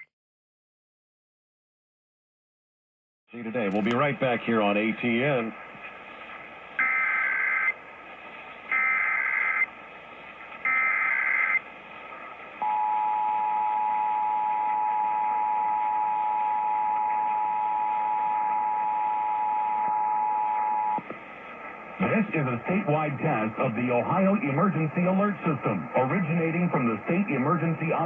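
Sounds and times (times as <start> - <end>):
faint hiss: 3.4 - 10.8.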